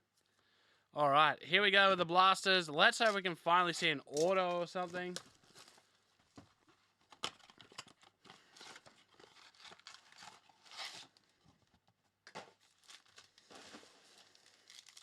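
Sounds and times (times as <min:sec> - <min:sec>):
plastic wrapping tearing and crinkling: 0:07.0 - 0:11.4, 0:12.6 - 0:15.0.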